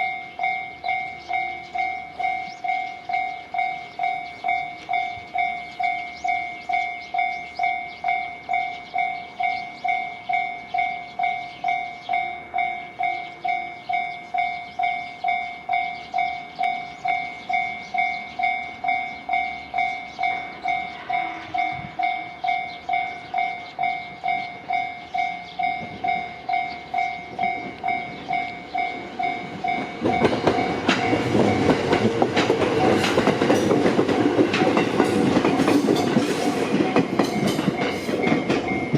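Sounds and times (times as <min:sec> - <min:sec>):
level-crossing warning bell: 0:00.0 - 0:38.9
train wheels clattering over rails: 0:25.5 - 0:38.9.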